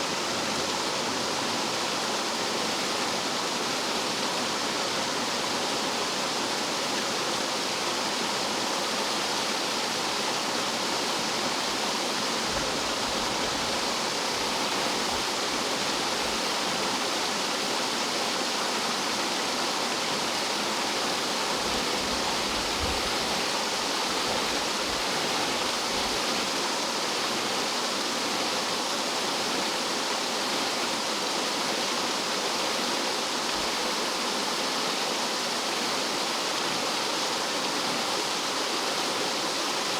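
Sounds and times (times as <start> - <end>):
stream water tumbling: 0.0 - 39.9.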